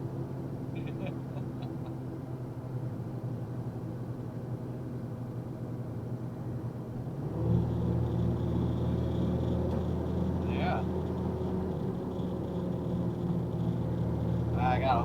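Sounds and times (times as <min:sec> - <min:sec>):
truck engine droning: 0:00.0 - 0:03.5, 0:07.1 - 0:15.0
road noise: 0:00.0 - 0:15.0.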